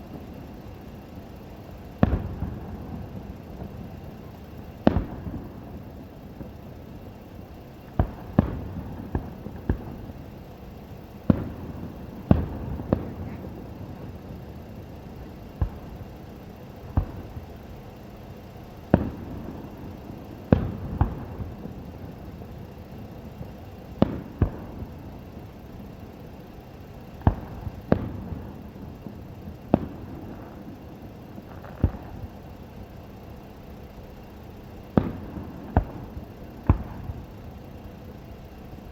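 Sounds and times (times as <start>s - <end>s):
fireworks bangs: 0.1s - 17.7s, 27.0s - 32.6s, 34.9s - 38.8s.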